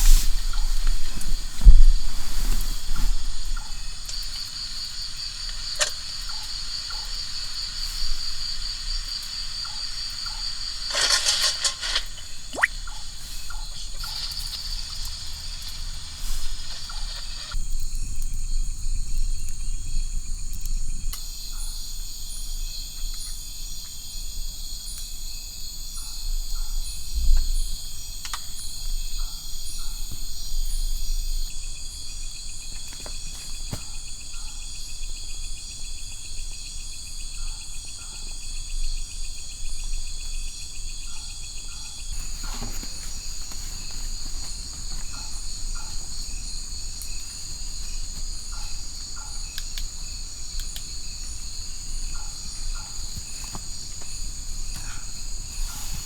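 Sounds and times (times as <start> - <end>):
lower buzzing insect trill: 0.0 - 19.1, 42.1 - 56.0
crickets trilling: 0.0 - 56.0.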